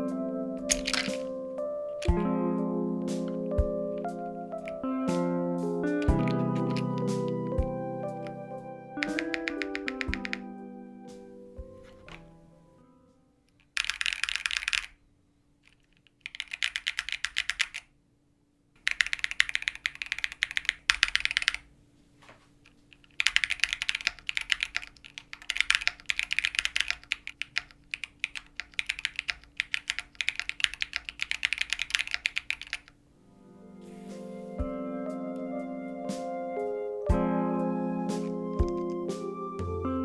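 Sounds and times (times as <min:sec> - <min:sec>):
typing on a mechanical keyboard: 0:00.7 - 0:01.3, 0:06.1 - 0:07.4, 0:09.0 - 0:10.4, 0:13.8 - 0:15.0, 0:15.7 - 0:17.9, 0:18.8 - 0:21.7, 0:22.9 - 0:33.0.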